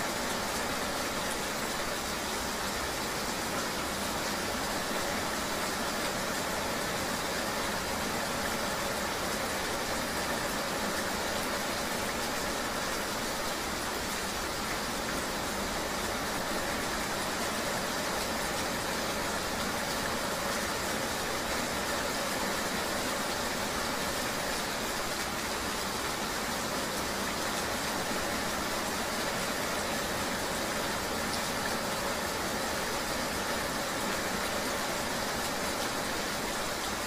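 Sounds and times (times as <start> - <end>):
rain hissing: 0.0 - 37.0.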